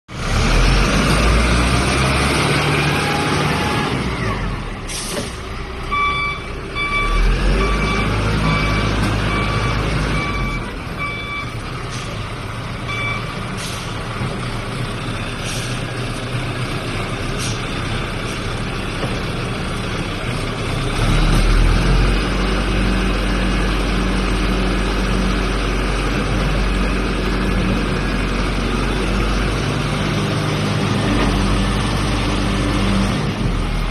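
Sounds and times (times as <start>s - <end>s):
diesel engine running: 0.1s - 33.9s
reversing alarm beeping: 5.9s - 11.7s, 12.8s - 13.8s.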